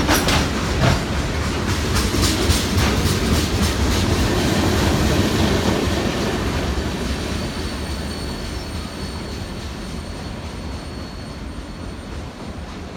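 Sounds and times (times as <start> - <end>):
train wheels rumbling on rail: 0.0 - 12.9
high wheel squeal: 7.3 - 12.5.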